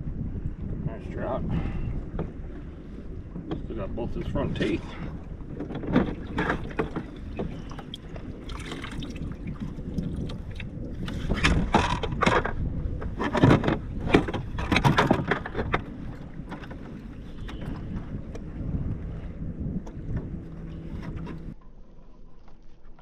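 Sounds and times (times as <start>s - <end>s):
wind rumble on microphone: 0.0s - 23.0s
knocks and rattles on plastic kayak: 3.3s - 19.2s.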